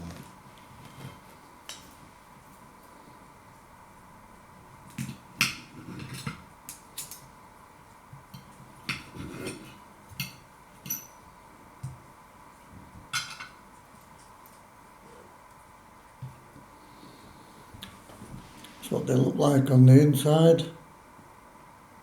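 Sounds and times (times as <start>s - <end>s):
cutlery clinking on a plate: 8.3s - 11.2s, 13.1s - 13.6s.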